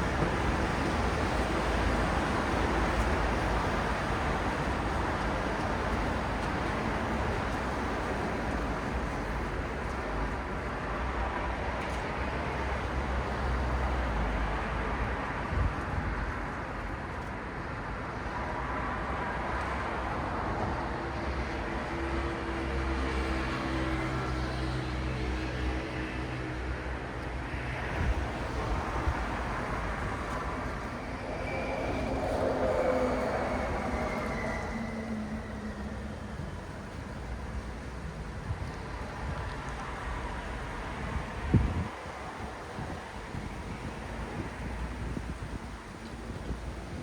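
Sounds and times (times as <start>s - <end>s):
car engines and tyre noise: 0.0s - 47.0s.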